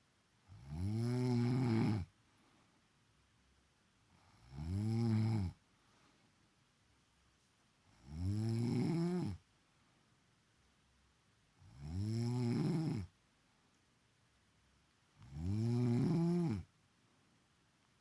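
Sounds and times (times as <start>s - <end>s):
woman snoring: 0.5s - 2.1s, 4.2s - 5.6s, 7.9s - 9.4s, 11.6s - 13.1s, 15.2s - 16.7s.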